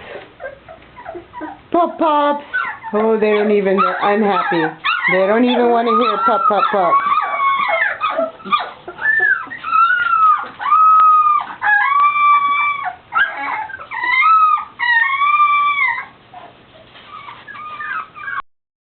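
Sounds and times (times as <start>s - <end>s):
puppies whining and howling: 0.0s - 1.7s, 2.4s - 18.4s.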